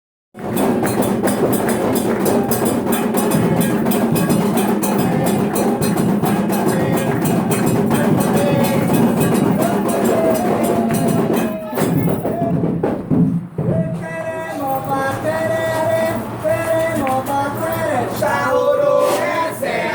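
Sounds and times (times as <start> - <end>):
music with fast percussion: 0.4 - 14.0.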